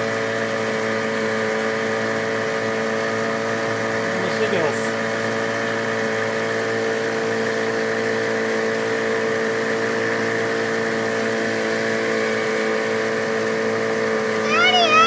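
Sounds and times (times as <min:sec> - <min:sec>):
outboard motor running: 0:00.0 - 0:15.0.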